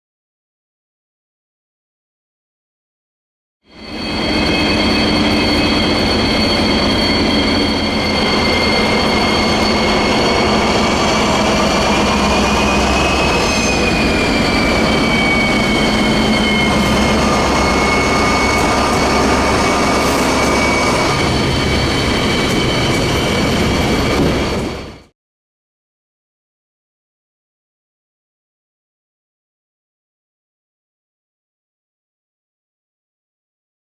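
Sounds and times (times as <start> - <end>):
train wheel squeal: 3.7 - 25.1.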